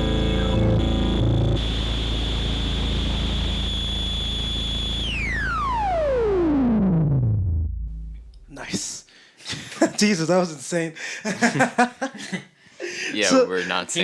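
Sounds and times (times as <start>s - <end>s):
low drone and hiss: 0.0s - 6.0s
synthesizer tone sweeping down: 0.0s - 8.6s.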